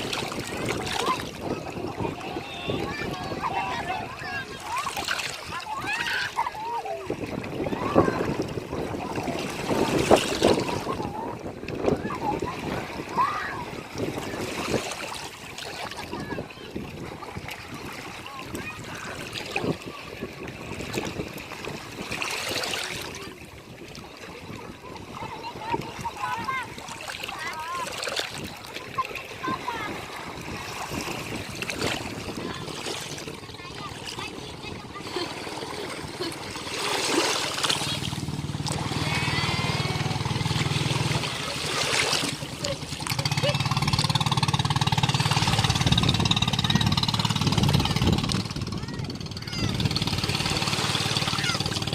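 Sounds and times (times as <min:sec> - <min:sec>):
sea water lapping at shore: 0:00.0 - 0:51.9
low motor hum: 0:37.4 - 0:51.9.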